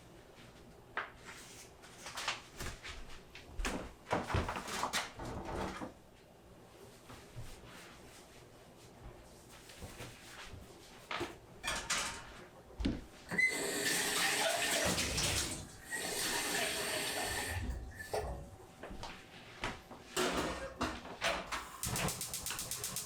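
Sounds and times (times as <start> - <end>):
tap running into sink: 13.3 - 18.3.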